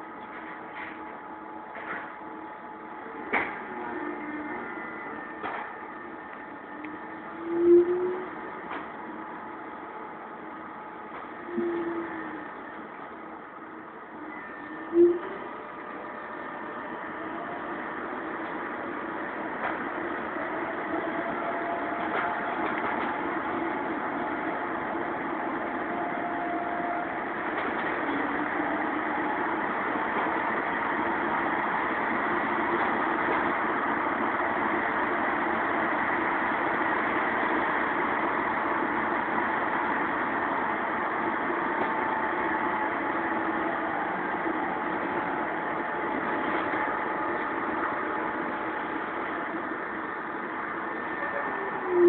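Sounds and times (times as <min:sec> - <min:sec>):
faint whining tones: 0:00.0 - 0:52.0
tram wheels rumbling: 0:00.0 - 0:52.0.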